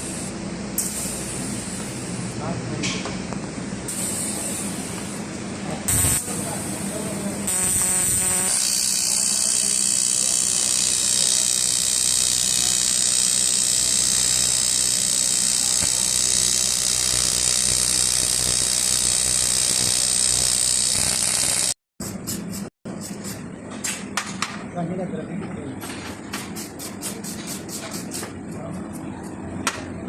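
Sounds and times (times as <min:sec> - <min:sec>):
gas torch flame hissing: 0:05.9 - 0:21.8.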